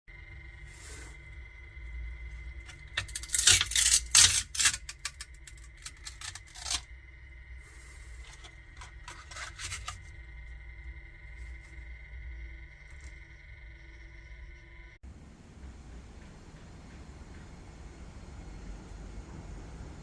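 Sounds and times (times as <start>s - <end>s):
faint high whine: 0.1s - 20.0s
low hum: 0.1s - 20.0s
small hard parts clicking and rattling: 2.6s - 6.8s.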